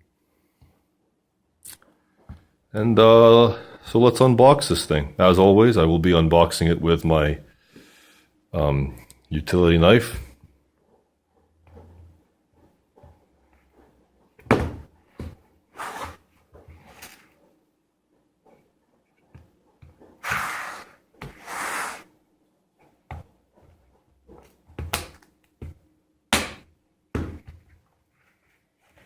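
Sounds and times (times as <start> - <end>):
utility knife cutting cardboard: 20.2 - 22.0.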